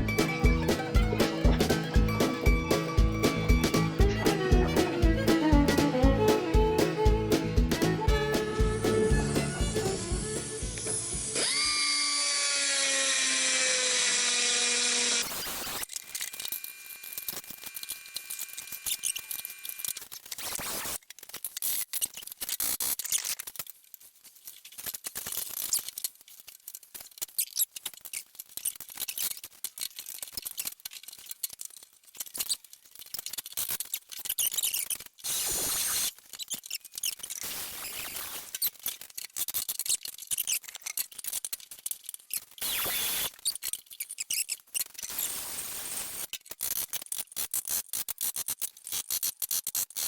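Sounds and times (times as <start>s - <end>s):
loud squealing whine: 9.2s - 13.2s.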